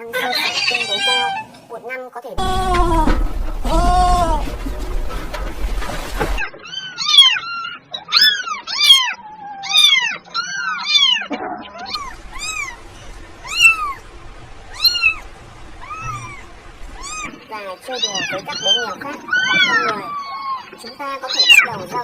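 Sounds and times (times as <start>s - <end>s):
kittens meowing: 0.1s - 1.6s, 6.6s - 21.9s.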